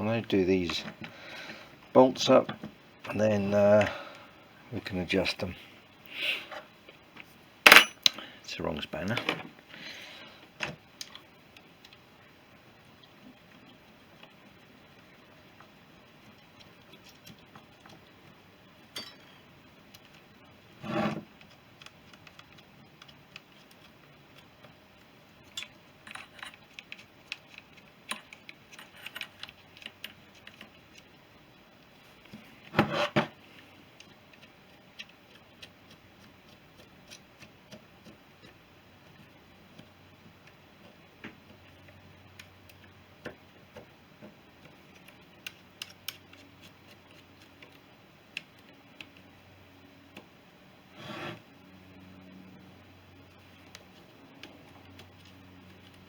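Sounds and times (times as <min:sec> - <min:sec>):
spanner and metal parts clinking: 0:07.7 - 0:08.2, 0:18.9 - 0:19.5, 0:25.5 - 0:30.4.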